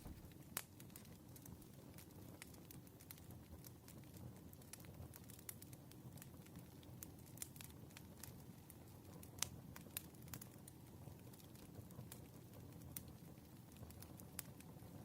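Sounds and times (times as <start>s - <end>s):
wood fire crackling: 0.0s - 14.7s.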